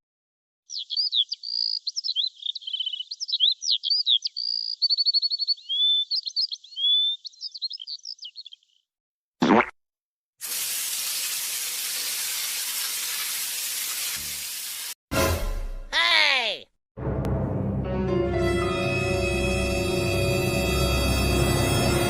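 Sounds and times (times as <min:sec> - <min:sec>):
songbird singing: 0:00.7 - 0:09.0.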